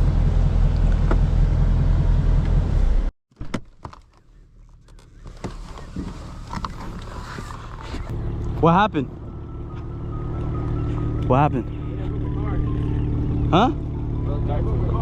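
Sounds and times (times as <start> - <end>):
car engine low rumble: 0.0 - 3.1, 3.9 - 15.0.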